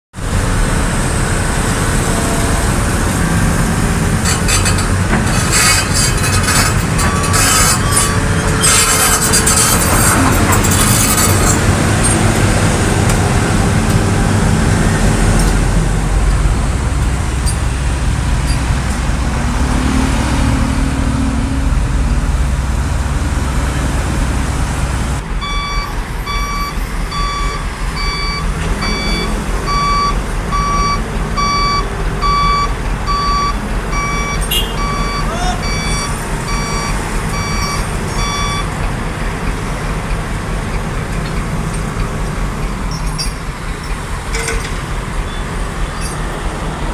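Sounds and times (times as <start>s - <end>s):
truck diesel engine rumbling: 0.1s - 46.9s
reversing alarm beeping: 7.0s - 8.5s, 25.4s - 38.8s.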